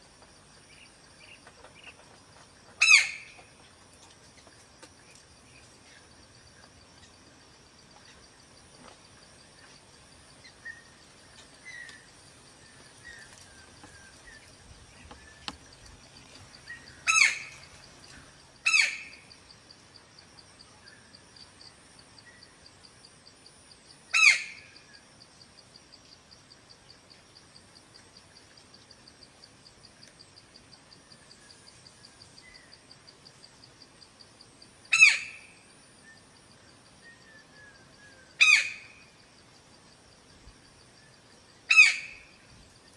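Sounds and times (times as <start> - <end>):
woodpecker harsh calls: 2.8 - 3.4, 16.6 - 17.8, 18.6 - 19.2, 24.1 - 24.8, 34.9 - 35.6, 38.4 - 39.1, 41.7 - 42.4.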